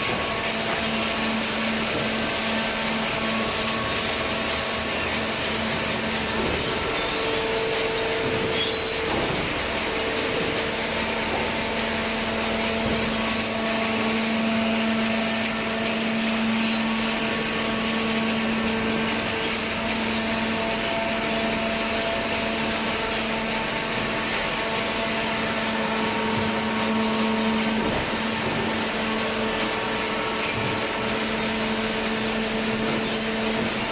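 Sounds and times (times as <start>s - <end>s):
baler machine hum: 0.0s - 33.9s
high machine whine: 0.0s - 33.9s.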